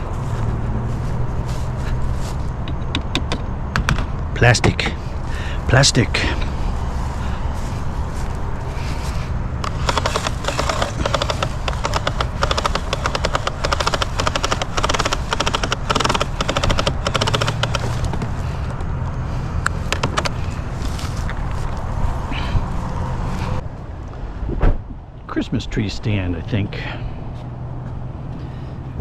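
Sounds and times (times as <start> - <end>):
low vehicle engine drone: 0.0 - 29.0
rattling clatter of loose items: 7.6 - 18.8, 19.8 - 21.9.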